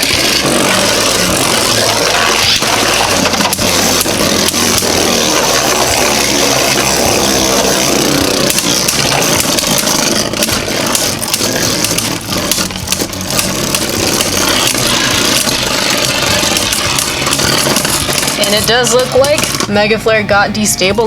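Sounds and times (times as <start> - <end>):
spinning tops clashing: 0.0 - 19.8
spinning tops whirring and grinding: 0.0 - 21.0.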